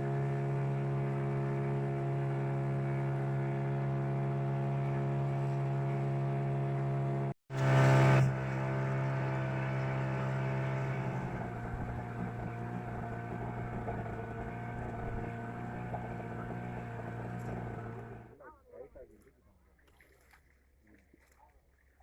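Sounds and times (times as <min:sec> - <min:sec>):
boat engine running: 0:00.0 - 0:18.4.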